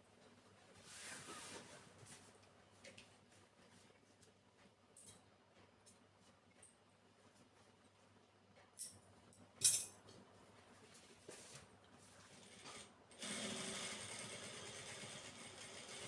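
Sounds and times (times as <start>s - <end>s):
sewing machine running: 12.5s - 16.0s.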